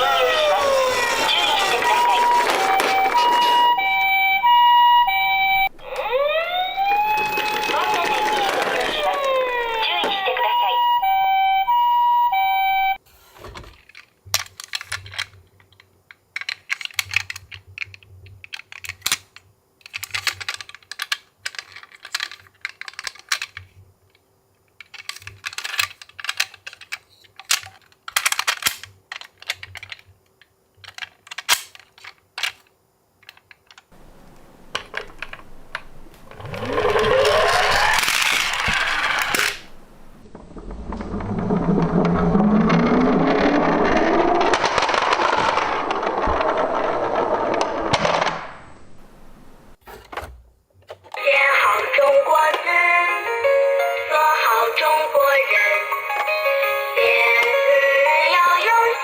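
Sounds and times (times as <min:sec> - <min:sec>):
toy cars clinking and clattering: 0:00.0 - 0:04.8, 0:07.0 - 0:11.9, 0:13.4 - 0:39.8, 0:42.0 - 0:48.3.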